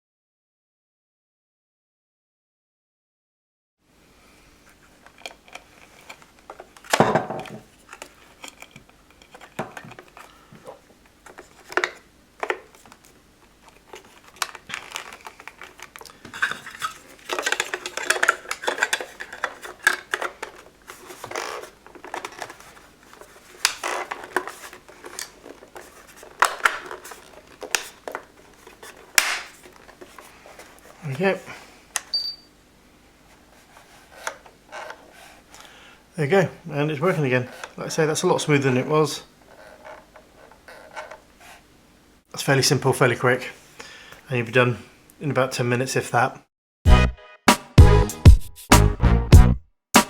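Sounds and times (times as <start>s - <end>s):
plastic parts clicking and rattling: 5.0s - 30.9s.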